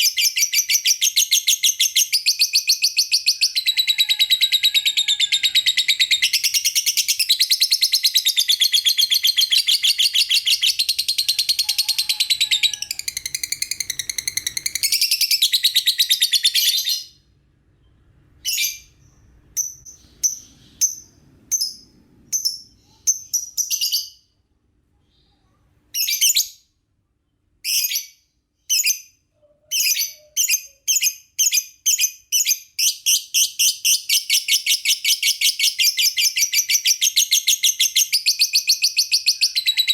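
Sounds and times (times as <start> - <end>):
lovebird trilling and chirping: 0.0 - 17.2.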